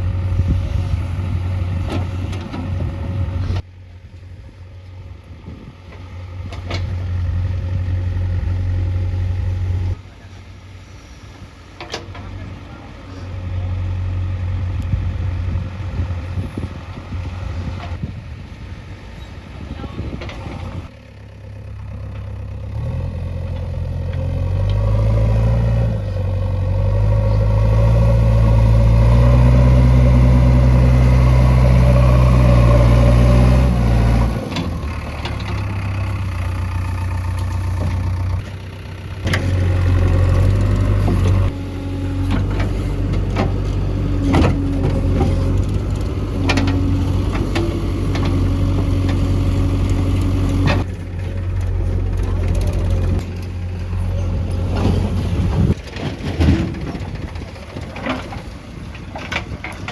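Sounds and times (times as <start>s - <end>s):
heavy diesel engine revving: 22.4s - 55.8s.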